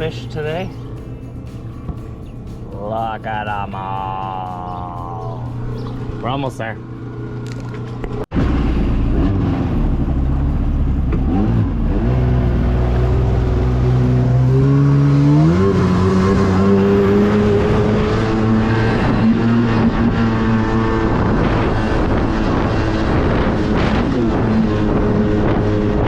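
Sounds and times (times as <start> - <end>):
jet ski engine revving: 8.4 - 26.0.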